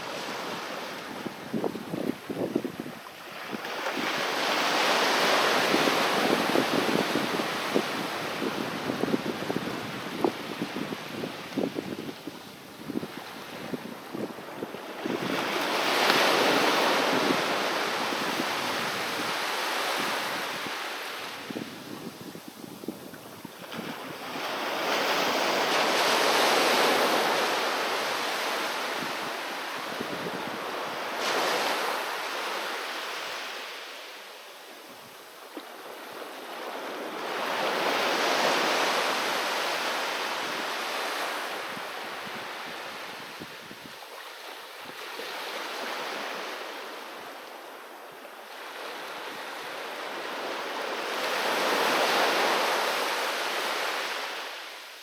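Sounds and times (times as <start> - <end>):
sea waves breaking on shore: 0.0 - 55.0.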